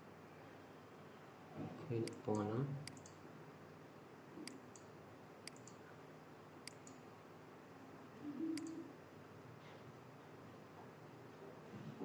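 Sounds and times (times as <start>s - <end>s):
computer mouse clicks: 2.0s - 3.2s, 4.4s - 5.8s, 6.6s - 7.0s, 8.6s - 8.8s.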